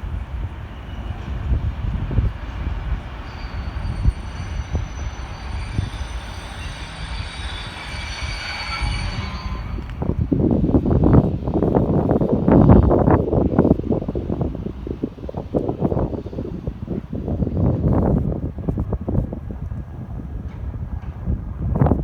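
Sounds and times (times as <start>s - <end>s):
train rumbling on rails: 0.0s - 22.0s
wind gust on microphone: 0.0s - 22.0s
high wheel squealing: 2.9s - 10.6s.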